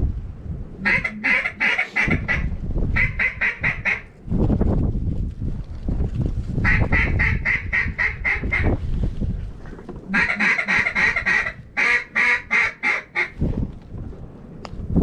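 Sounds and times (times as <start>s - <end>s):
wind buffeting microphone: 0.0s - 15.0s
duck call quacking: 0.8s - 4.1s, 10.1s - 13.4s.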